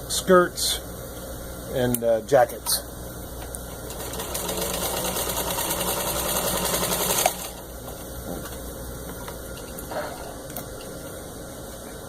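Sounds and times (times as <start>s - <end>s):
sewing machine rattling: 3.9s - 7.6s.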